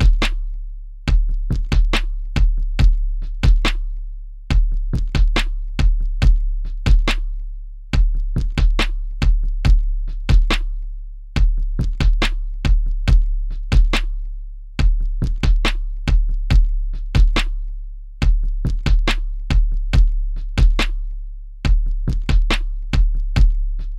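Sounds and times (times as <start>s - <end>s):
deep booming bass kick: 0.0s - 0.3s, 1.1s - 3.7s, 4.5s - 7.1s, 8.0s - 10.6s, 11.4s - 14.0s, 14.8s - 17.4s, 18.2s - 20.8s, 21.7s - 23.8s
snappy drum machine hits: 0.0s - 0.4s, 1.1s - 3.8s, 4.5s - 7.3s, 8.0s - 10.8s, 11.4s - 14.1s, 14.8s - 17.6s, 18.2s - 21.1s, 21.7s - 23.9s.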